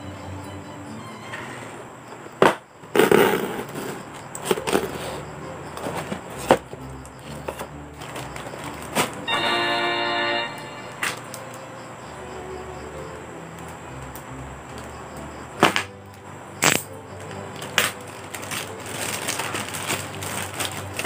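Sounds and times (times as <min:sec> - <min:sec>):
background music: 0:00.0 - 0:02.1, 0:04.6 - 0:21.0
plastic crinkling: 0:17.6 - 0:21.0.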